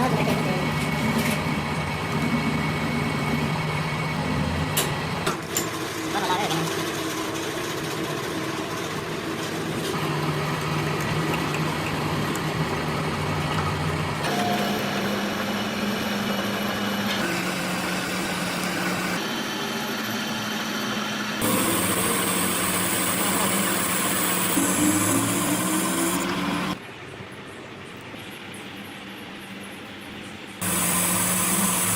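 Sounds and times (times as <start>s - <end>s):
machinery humming: 5.9s - 26.8s, 27.4s - 31.9s.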